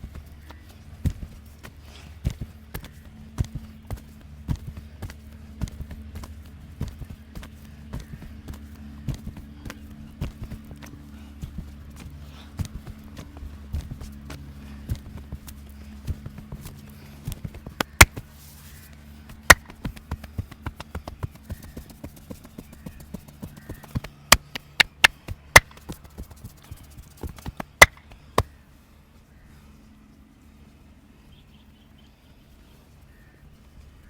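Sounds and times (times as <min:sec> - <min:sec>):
low steady hum: 0:00.0 - 0:34.0
hands slapping body: 0:14.9 - 0:18.3, 0:19.3 - 0:28.5.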